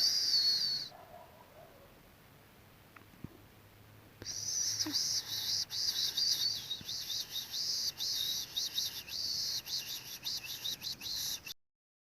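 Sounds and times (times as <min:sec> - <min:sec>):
high-pitched chirping: 0:00.0 - 0:00.9, 0:04.2 - 0:11.6.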